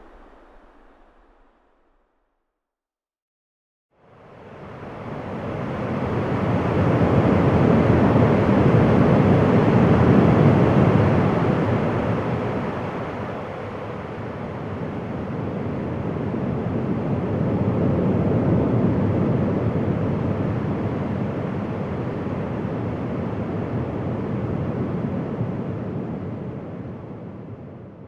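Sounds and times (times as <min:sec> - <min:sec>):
wind blowing: 0:00.0 - 0:02.3.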